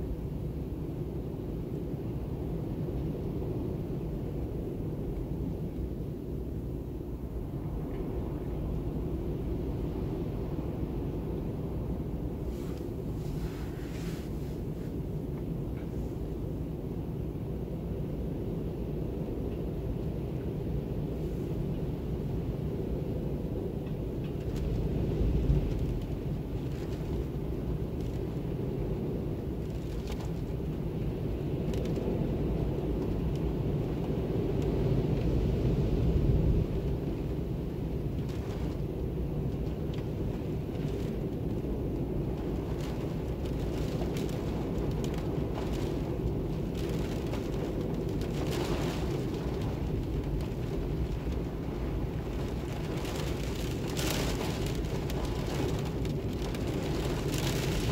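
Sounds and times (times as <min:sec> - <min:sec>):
storm winds gusting: 0:20.8 - 0:57.9.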